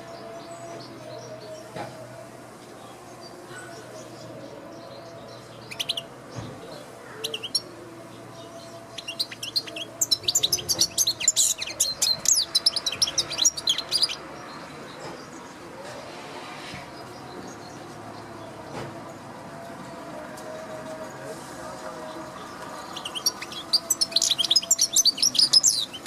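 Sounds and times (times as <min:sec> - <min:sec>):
bird chirping and twittering: 0:02.9 - 0:15.6, 0:22.0 - 0:26.0.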